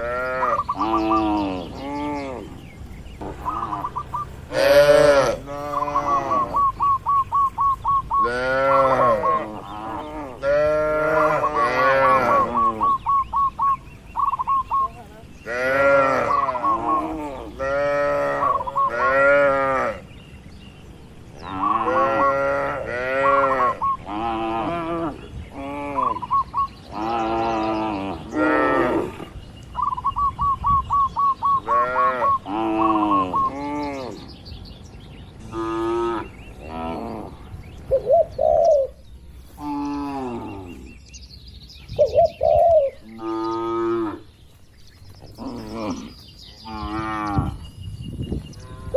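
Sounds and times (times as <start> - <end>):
bird chirping trill: 0.0 - 48.9
cattle mooing: 4.5 - 6.8, 8.2 - 13.0, 15.5 - 20.0, 21.5 - 26.2, 45.4 - 47.6.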